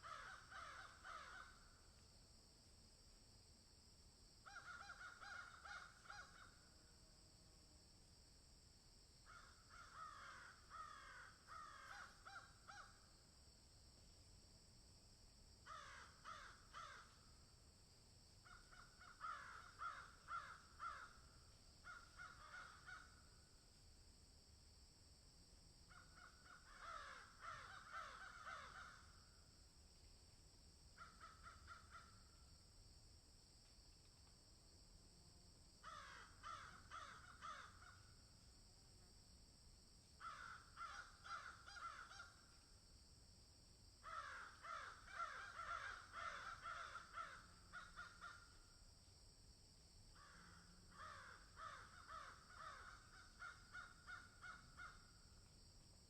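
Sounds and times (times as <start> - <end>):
crows cawing: 0.0 - 1.8, 4.4 - 6.6, 9.3 - 13.0, 15.6 - 17.2, 18.4 - 23.2, 25.9 - 29.2, 31.0 - 32.2, 35.8 - 38.1, 40.2 - 42.4, 44.0 - 48.6, 50.2 - 55.1.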